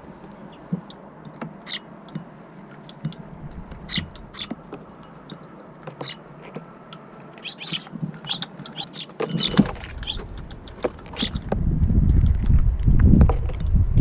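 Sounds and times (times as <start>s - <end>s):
sparrows chirping: 0.0s - 11.6s
wind rushing: 3.2s - 4.6s, 9.5s - 14.0s.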